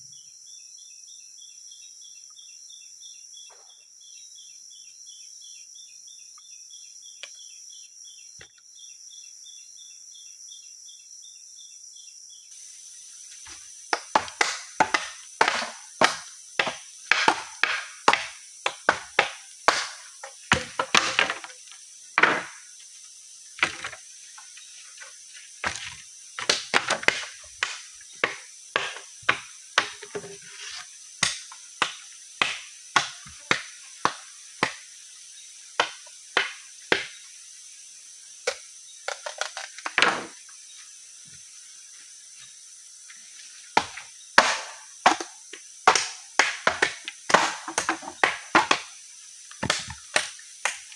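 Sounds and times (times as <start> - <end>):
high-pitched insect drone: 0.0 - 50.9
chopping blows on wood: 13.9 - 21.6, 22.2 - 22.6, 23.6 - 24.0, 25.6 - 30.2, 31.2 - 34.8, 35.8 - 37.2, 43.8 - 48.9, 49.6 - 50.9.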